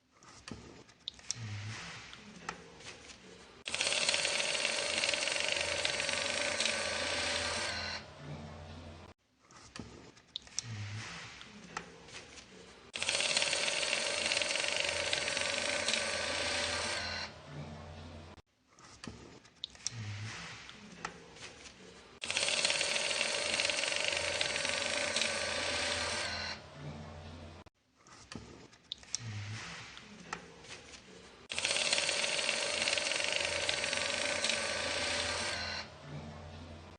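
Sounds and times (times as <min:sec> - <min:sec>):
banknote counter running: 0:03.7 - 0:08.6, 0:13.0 - 0:17.9, 0:22.2 - 0:27.2, 0:31.5 - 0:36.5.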